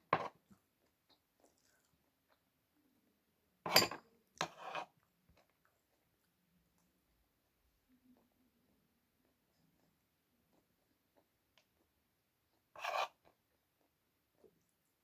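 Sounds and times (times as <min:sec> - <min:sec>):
utensils scraping a plate: 0:12.8 - 0:13.2.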